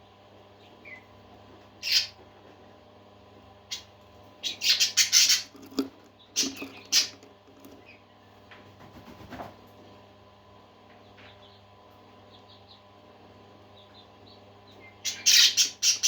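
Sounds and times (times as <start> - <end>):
parakeets chirping and squawking: 1.8 - 2.2, 3.7 - 8.0, 14.8 - 16.0.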